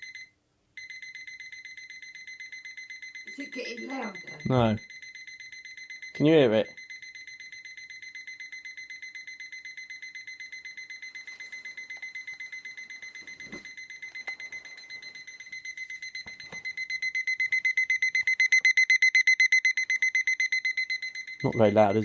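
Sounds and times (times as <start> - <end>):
alarm clock beeping: 0.0 - 22.0.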